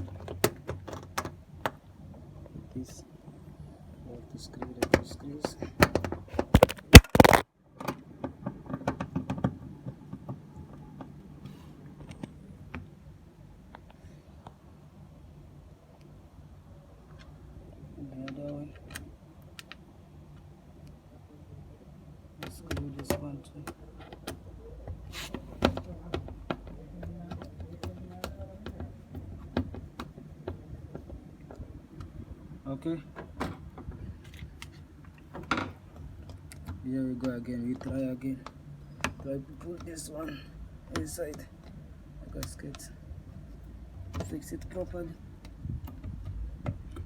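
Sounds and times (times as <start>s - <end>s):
plastic parts being handled: 4.8s - 10.4s.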